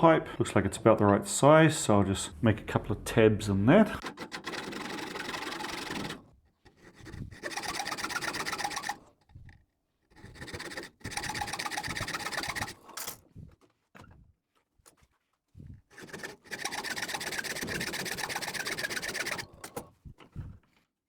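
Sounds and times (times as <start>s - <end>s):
metal tool rasping on pipe: 4.0s - 9.1s, 10.1s - 13.0s, 15.9s - 19.8s.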